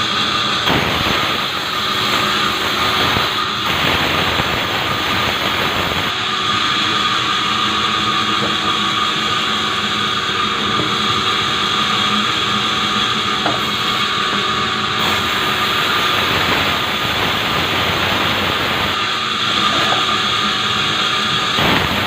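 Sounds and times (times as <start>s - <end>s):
sawmill saw cutting wood: 0.1s - 22.0s.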